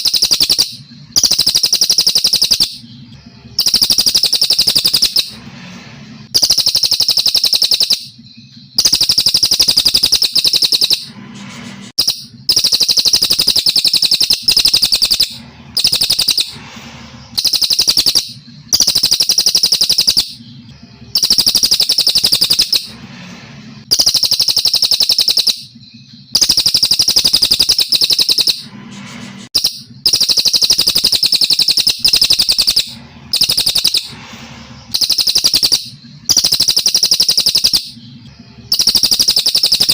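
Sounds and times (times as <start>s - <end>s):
songbird singing: 6.4s - 11.1s, 23.9s - 28.6s.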